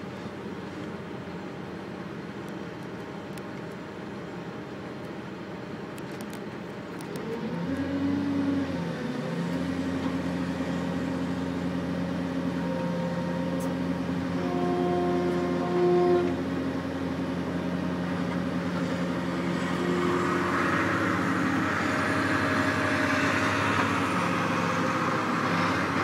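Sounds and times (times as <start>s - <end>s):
diesel engine revving: 7.0s - 26.0s.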